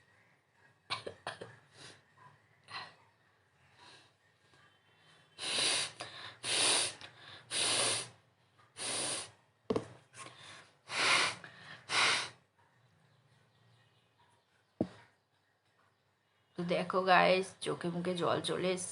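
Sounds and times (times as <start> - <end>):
person blowing through nose: 5.4 - 8.2, 10.9 - 12.4.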